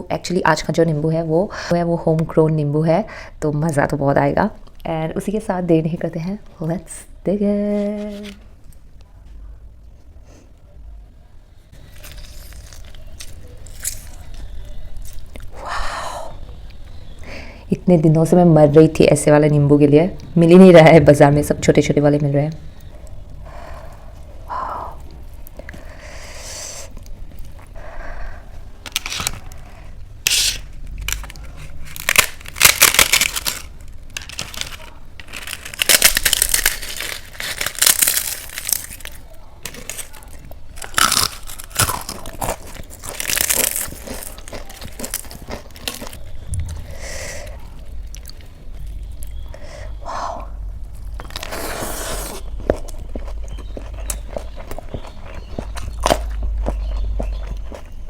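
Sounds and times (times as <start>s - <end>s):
crunchy chewing: 11.5s - 17.6s, 22.5s - 58.0s
chewing with lip clicks: 52.4s - 58.0s.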